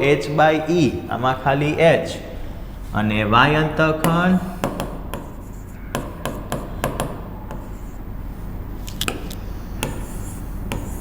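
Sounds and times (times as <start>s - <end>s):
low electrical hum: 0.0s - 11.0s
pen scratching on writing surface: 4.4s - 8.0s, 8.9s - 11.0s.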